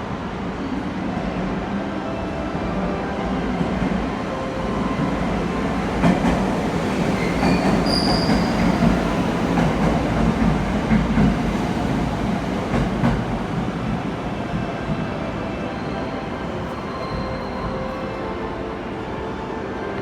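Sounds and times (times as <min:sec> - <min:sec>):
train rumbling: 0:00.0 - 0:20.0
wheel squeal: 0:07.5 - 0:08.6.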